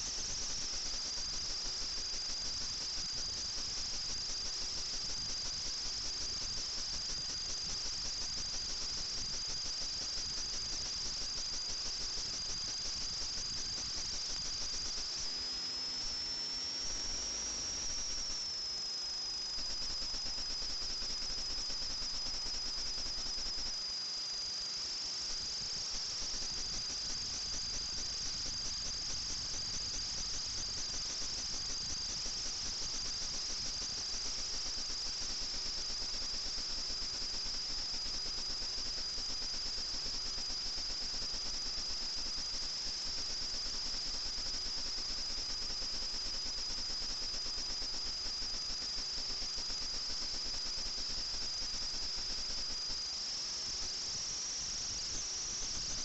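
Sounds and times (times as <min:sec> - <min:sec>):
quadcopter motors whining: 0:14.0 - 0:19.8, 0:53.7 - 0:56.0.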